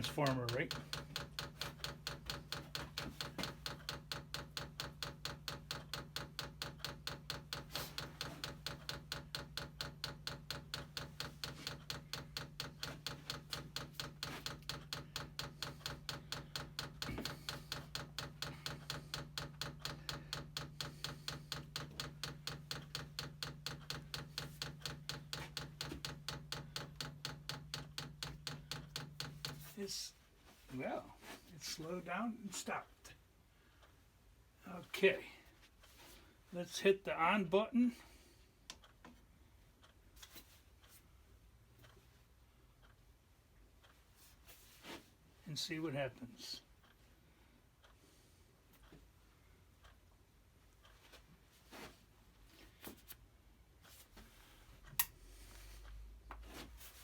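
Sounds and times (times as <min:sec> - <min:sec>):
fuel pump clicking: 0:00.0 - 0:29.7.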